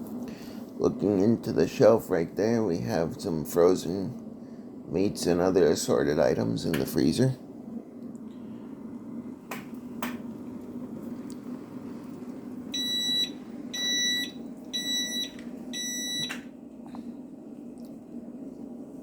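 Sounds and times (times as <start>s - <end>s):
steady low hum: 0.0s - 19.0s
freezer alarm beeping: 12.7s - 16.5s.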